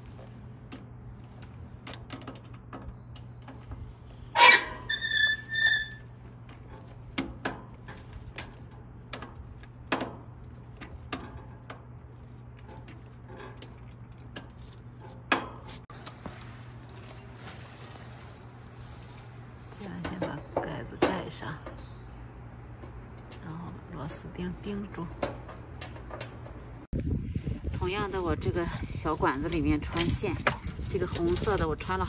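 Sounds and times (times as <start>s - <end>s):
short squeaks: 2.9s - 6.2s.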